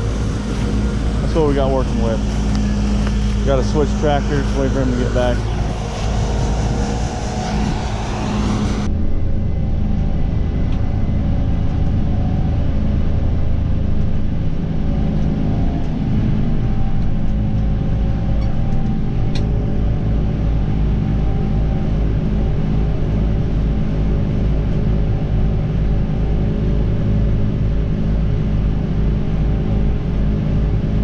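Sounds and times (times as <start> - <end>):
diesel engine rumbling: 0.0 - 17.3.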